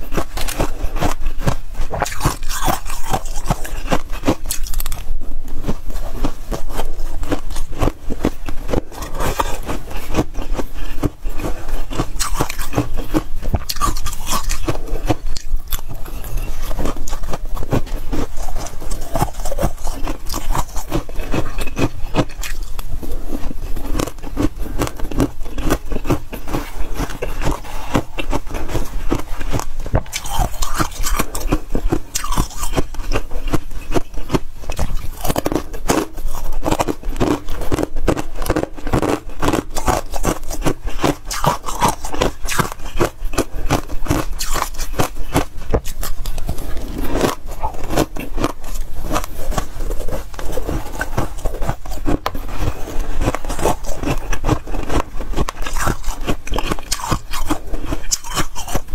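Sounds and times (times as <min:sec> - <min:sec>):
frost scraping and crunching: 0:00.0 - 0:58.9.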